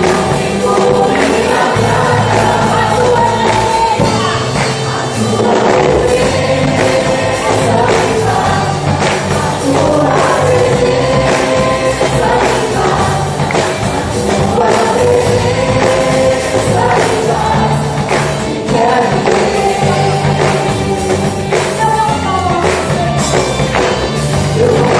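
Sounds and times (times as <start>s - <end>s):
bass and drums: 0.0s - 24.9s
group singing worship song: 0.0s - 24.9s.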